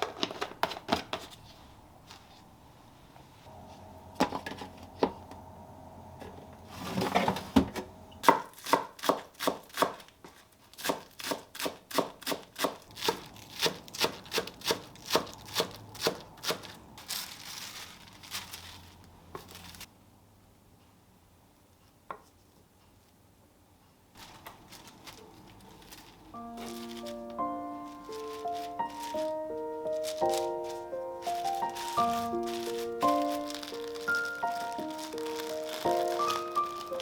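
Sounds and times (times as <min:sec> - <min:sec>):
knife chopping on cutting board: 0:08.2 - 0:10.0.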